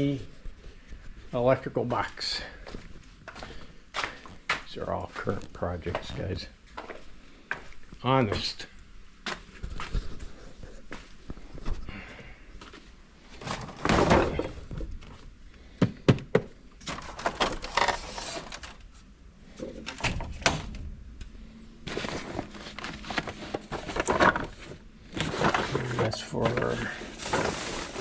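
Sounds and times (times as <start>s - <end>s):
objects moved and scraped: 12.7s - 15.3s, 16.8s - 28.0s.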